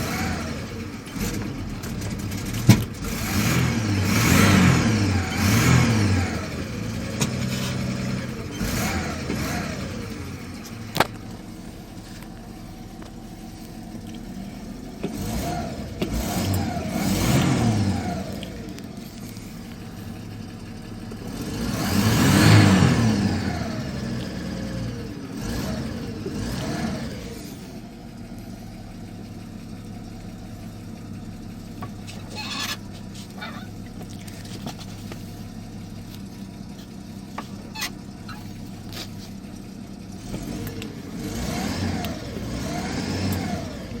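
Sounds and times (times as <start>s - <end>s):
pickup truck engine revving: 0.0s - 27.9s, 39.9s - 44.0s.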